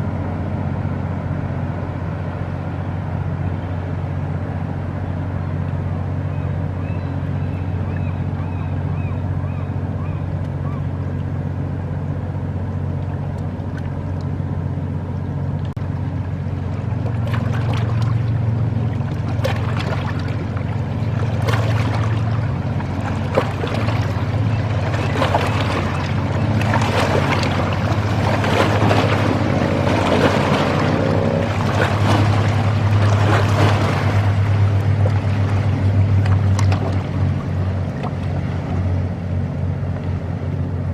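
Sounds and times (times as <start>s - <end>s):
boat engine humming: 0.0s - 40.9s.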